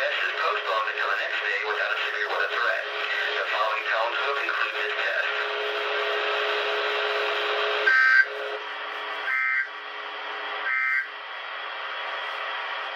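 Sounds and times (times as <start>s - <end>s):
faint steady hum: 0.0s - 12.9s
radio receiver hiss: 0.0s - 12.9s
two-tone digital data bursts: 9.3s - 9.7s, 10.7s - 11.1s.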